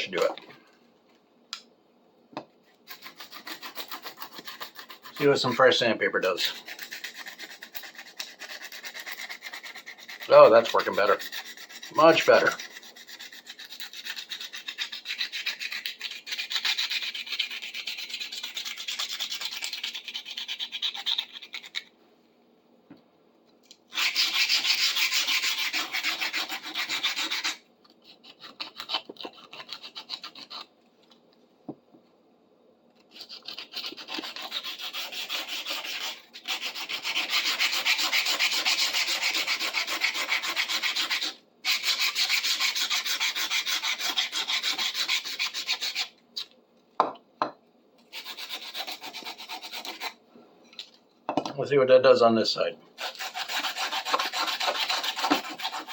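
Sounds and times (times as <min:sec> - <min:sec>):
sandpaper rubbing on metal: 0:02.9 - 0:05.6, 0:06.2 - 0:21.8, 0:23.9 - 0:27.6, 0:33.1 - 0:46.1, 0:48.1 - 0:50.2, 0:53.0 - 0:55.9.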